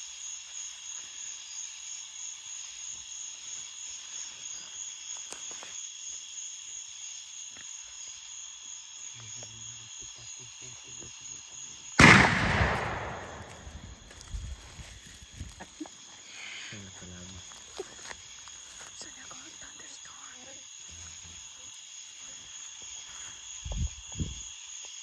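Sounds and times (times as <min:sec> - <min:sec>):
shotgun blast: 0:12.0 - 0:14.1.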